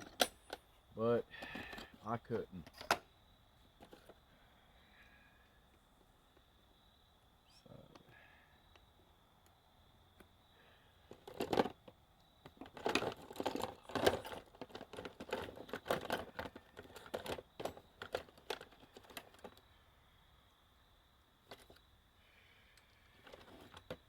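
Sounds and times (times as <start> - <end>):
rummaging clicks and clatters: 0.0 - 0.6, 1.4 - 3.0, 3.8 - 4.2, 11.1 - 19.6, 21.5 - 21.8, 22.8 - 24.0.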